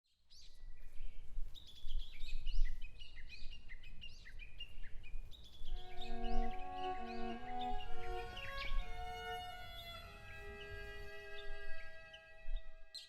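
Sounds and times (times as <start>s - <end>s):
songbirds chirping and whistling: 0.4s - 13.0s
piano and viola held notes: 5.7s - 12.9s.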